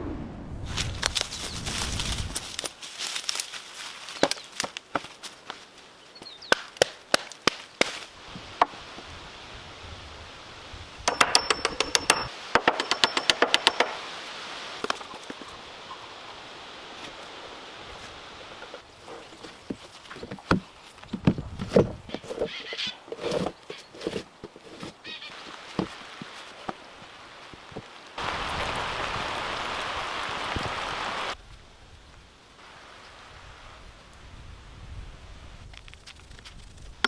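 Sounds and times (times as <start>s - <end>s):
knocks and taps of building work: 11.1s - 14.0s.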